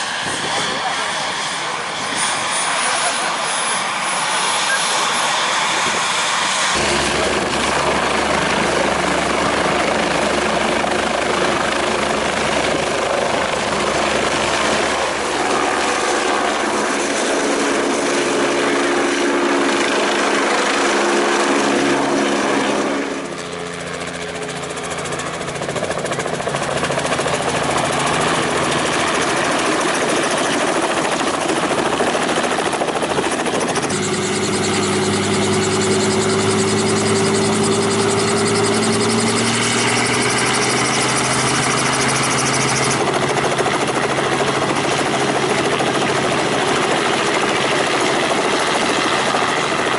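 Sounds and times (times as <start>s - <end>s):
helicopter turbine and rotor: 0.0s - 49.9s
rising steady tones: 32.0s - 42.9s.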